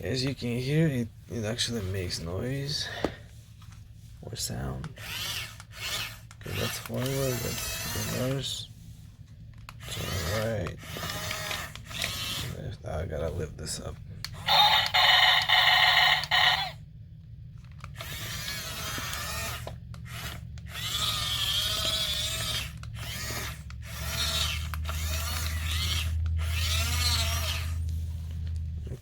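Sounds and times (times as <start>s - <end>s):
steady low hum: 0.0s - 29.0s
toy electric gear motors whirring: 4.4s - 8.7s, 9.6s - 16.8s, 17.6s - 29.0s.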